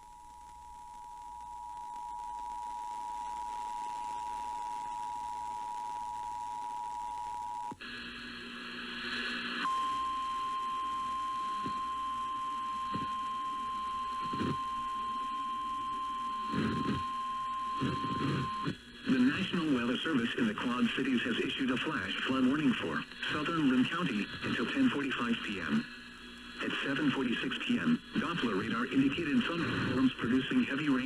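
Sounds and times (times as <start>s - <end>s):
radio noise: 7.8s - 9.8s, 11.4s - 31.0s
steady warning alarm tone: 9.7s - 18.8s.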